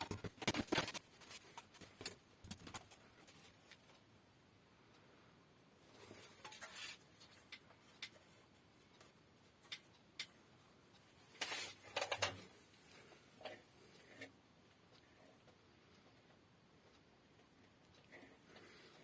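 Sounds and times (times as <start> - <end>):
tools scraping and rustling: 5.9 - 8.4, 11.3 - 14.3.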